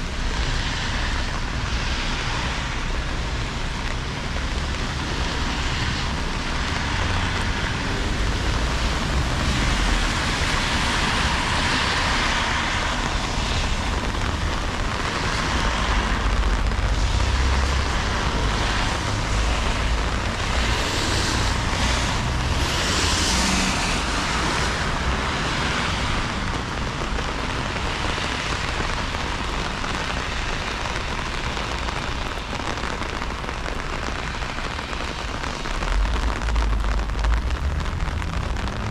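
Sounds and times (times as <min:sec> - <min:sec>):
steady rain hiss: 0:00.0 - 0:38.9
low rumble: 0:16.0 - 0:24.2.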